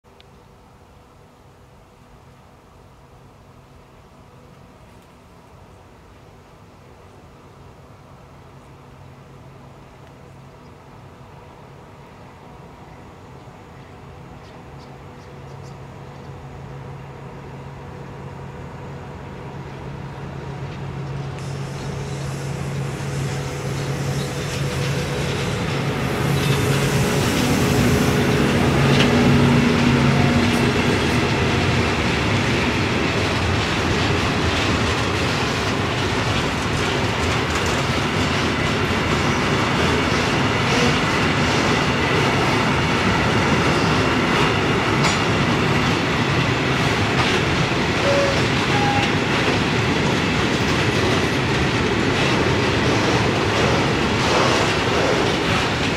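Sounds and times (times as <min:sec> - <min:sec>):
electric locomotive humming: 0:00.2 - 0:55.9
train wheels clattering over rail joints: 0:20.7 - 0:55.9.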